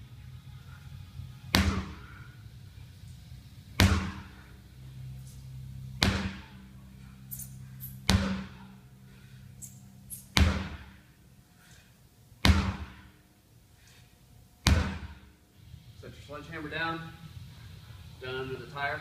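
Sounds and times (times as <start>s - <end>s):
sledgehammer striking a tire: 1.5s - 2.1s, 3.8s - 4.3s, 6.0s - 6.5s, 8.1s - 8.6s, 10.4s - 10.9s, 12.4s - 13.1s, 14.6s - 15.2s.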